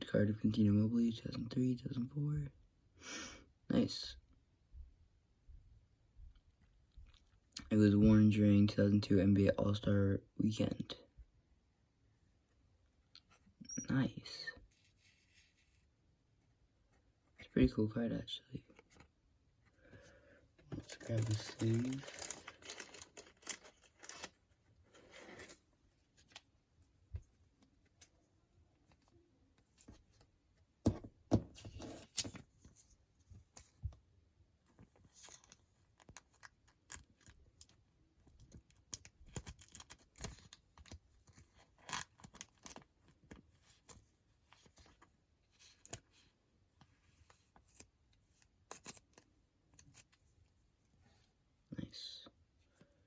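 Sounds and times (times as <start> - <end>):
card sleeve rustling and scraping: 20.6 - 26.5, 30.9 - 32.9.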